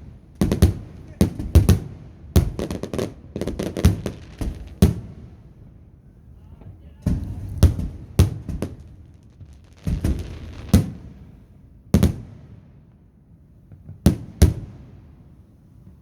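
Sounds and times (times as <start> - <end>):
fireworks bangs: 0.0 - 12.8.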